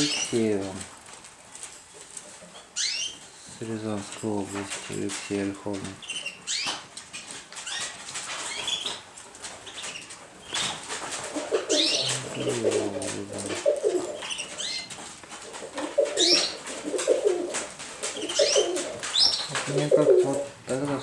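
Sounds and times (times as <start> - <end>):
pigeons cooing: 0.0 - 0.8, 7.6 - 21.0.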